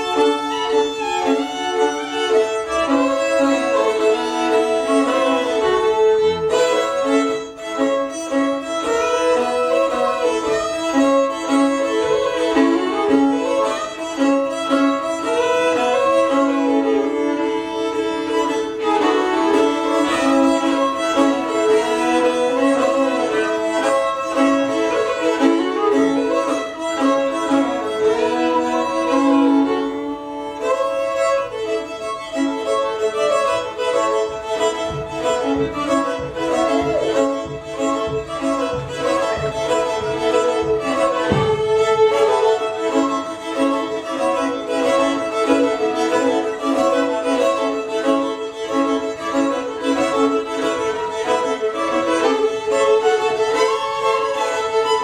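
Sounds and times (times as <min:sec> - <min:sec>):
fiddle melody: 0:00.0 - 0:55.0
rhythmic beat: 0:32.6 - 0:46.9.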